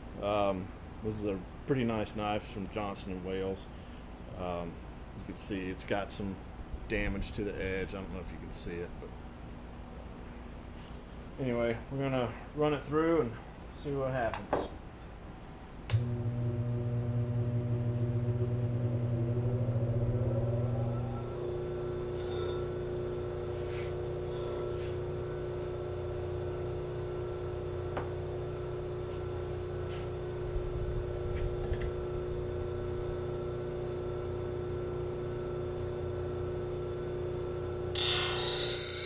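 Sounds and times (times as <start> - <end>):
bench grinder humming: 15.9 - 39.0
knife grinding hiss: 22.1 - 22.8.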